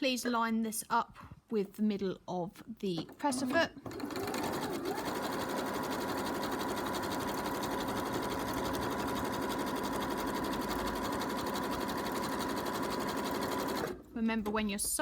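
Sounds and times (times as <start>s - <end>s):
electric sewing machine stitching: 3.3s - 14.2s.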